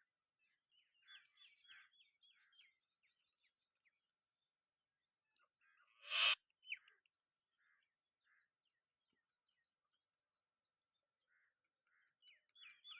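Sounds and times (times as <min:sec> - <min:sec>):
faint bird chirps: 0:05.3 - 0:07.0
short rush of noise: 0:06.0 - 0:06.4.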